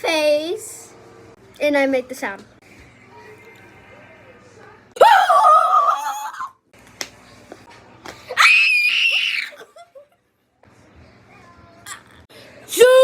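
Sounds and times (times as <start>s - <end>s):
woman squealing: 5.0s - 6.5s.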